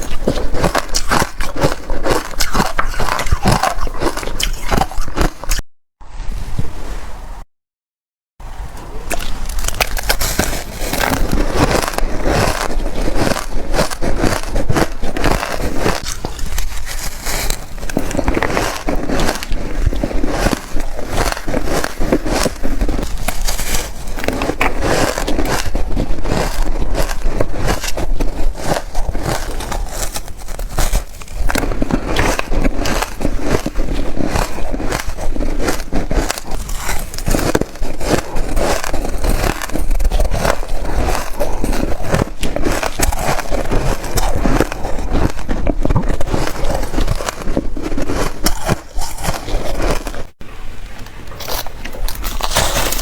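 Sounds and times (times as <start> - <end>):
ice being chewed: 0.0 - 5.6, 9.1 - 50.4, 51.3 - 53.0.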